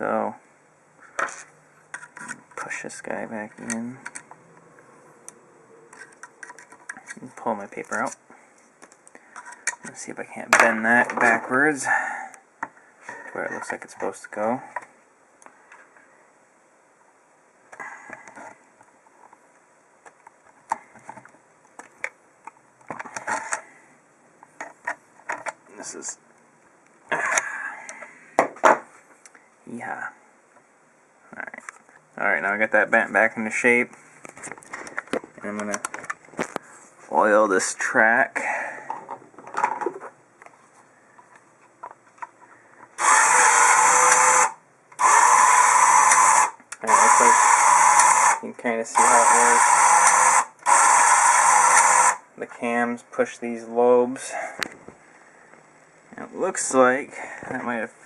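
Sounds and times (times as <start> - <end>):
electric hole punch motor running: 43.0 - 48.4, 49.0 - 52.2.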